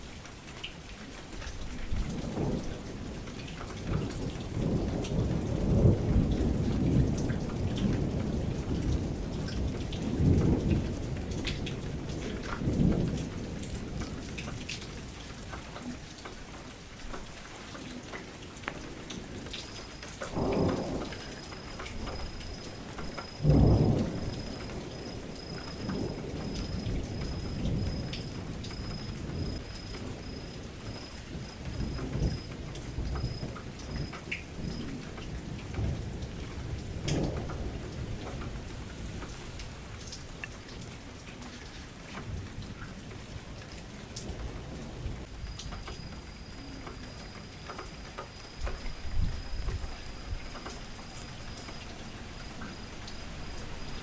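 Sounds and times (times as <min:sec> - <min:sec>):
steady rain: 0:00.0 - 0:54.0
low rolling thunder: 0:01.8 - 0:16.2, 0:17.3 - 0:41.0, 0:41.6 - 0:54.0
thunder claps: 0:18.7 - 0:39.4.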